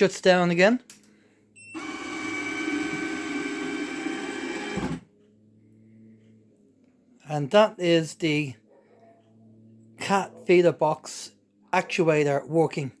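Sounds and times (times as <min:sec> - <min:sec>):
actuator motor whine: 0:01.8 - 0:05.1.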